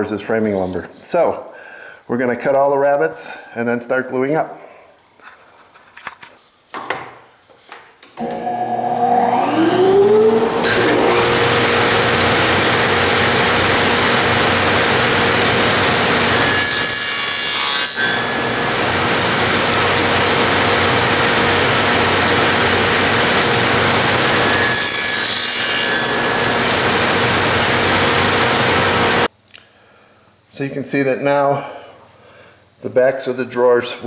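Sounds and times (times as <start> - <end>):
table saw cutting wood: 8.2 - 29.3.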